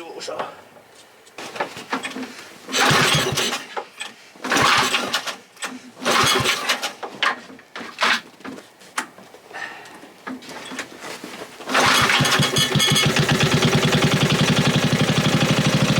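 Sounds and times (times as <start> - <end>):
recoil starter pulls: 1.4 - 8.2, 11.6 - 15.9
small engine cranking: 2.7 - 3.7, 4.4 - 5.4, 6.0 - 7.0, 11.7 - 15.9.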